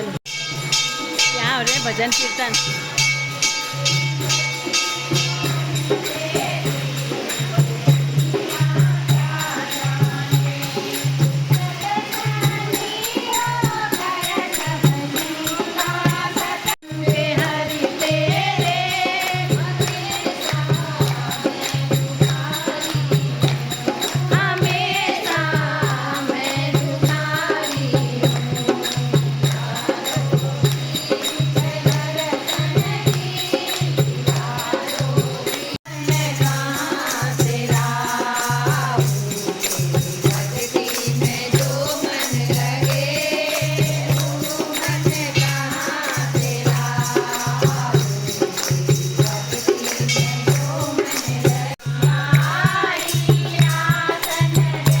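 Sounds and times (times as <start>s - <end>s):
jingling hand percussion: 0.0s - 55.0s
voices singing a hymn: 3.4s - 55.0s
steady low drum beat: 5.2s - 55.0s.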